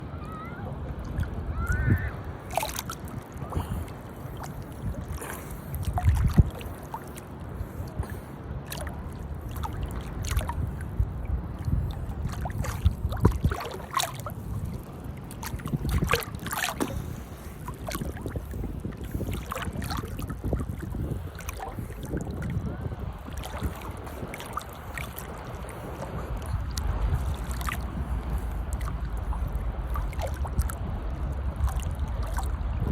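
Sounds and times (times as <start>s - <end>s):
steady low rumble: 0.0s - 32.9s
water splashing and lapping: 0.0s - 32.9s.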